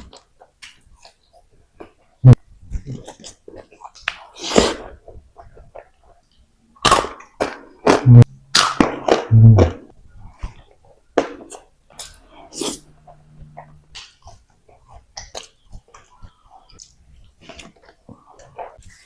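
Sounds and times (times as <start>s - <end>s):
wet chewing: 12.5s - 19.0s.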